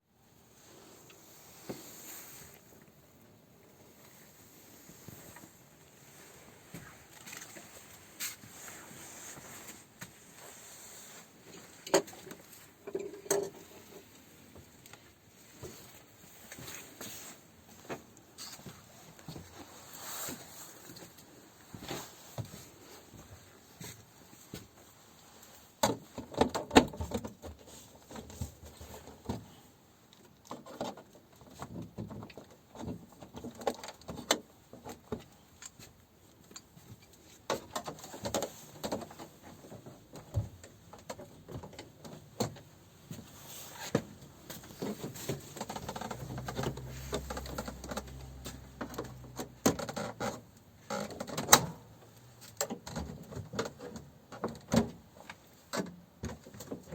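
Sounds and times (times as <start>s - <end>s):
objects being handled: 30.2s - 50.4s.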